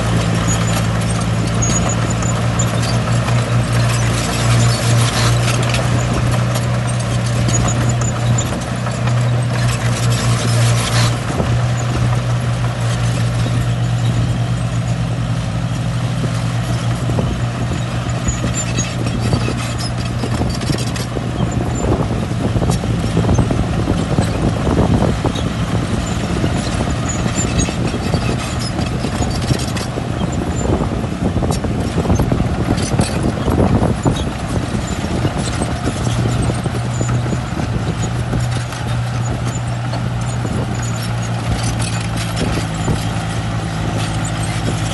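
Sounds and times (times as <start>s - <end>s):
metallic clanks of tracks: 0.0s - 15.0s, 31.5s - 44.9s
bulldozer diesel engine drone: 0.0s - 44.9s.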